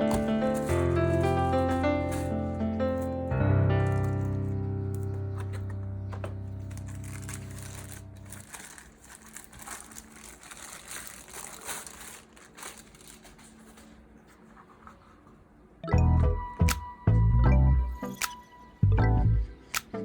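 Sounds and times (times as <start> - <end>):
background music: 0.0 - 8.8, 15.8 - 20.0
packaging crinkling and rustling: 0.0 - 15.2.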